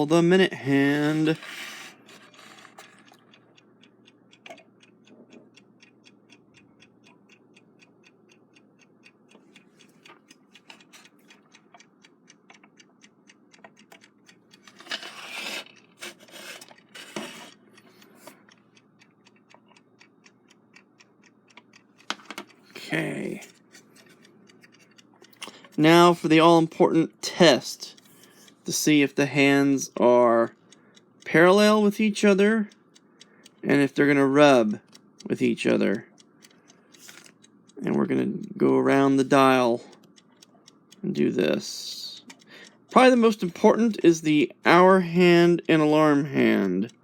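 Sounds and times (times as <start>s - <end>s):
clock movement ticking: 0.0s - 47.0s
scraping and rubbing of clock hands: 0.8s - 3.6s, 9.4s - 11.9s, 13.6s - 18.6s, 22.0s - 26.9s, 27.8s - 28.7s, 36.9s - 37.4s.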